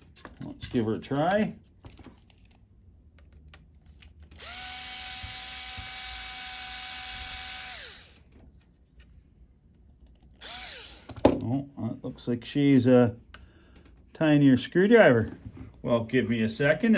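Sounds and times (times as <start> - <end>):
electric screwdriver motor spinning: 4.3 - 8.2, 10.4 - 11.2.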